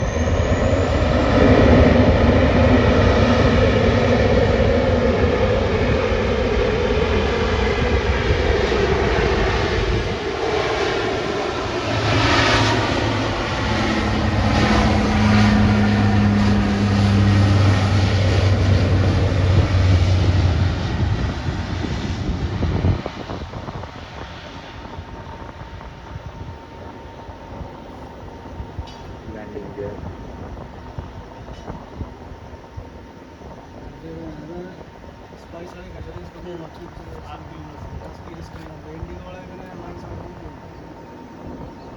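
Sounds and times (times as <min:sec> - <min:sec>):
turboprop engines droning: 0:00.0 - 0:41.9.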